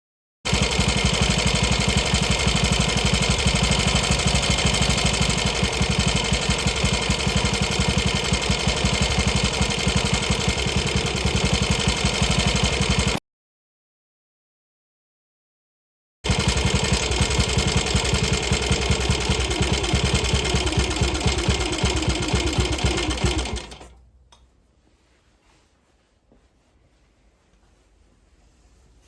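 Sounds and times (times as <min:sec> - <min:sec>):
motorcycle engine idling: 0:00.5 - 0:13.2, 0:16.3 - 0:23.8.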